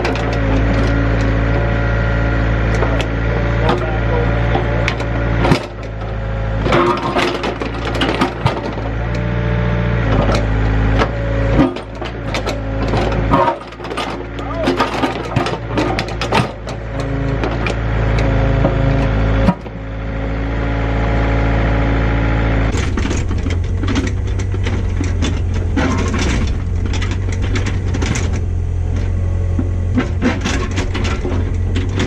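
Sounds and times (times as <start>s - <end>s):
engine running under load: 0.0s - 32.0s
knocks and clatters: 2.7s - 9.2s, 10.0s - 19.8s, 22.7s - 32.0s.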